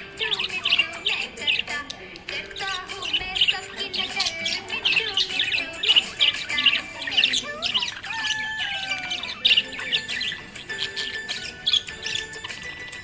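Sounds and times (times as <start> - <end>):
budgerigar chirping: 0.0 - 13.0
wavering bird warble: 0.0 - 13.0.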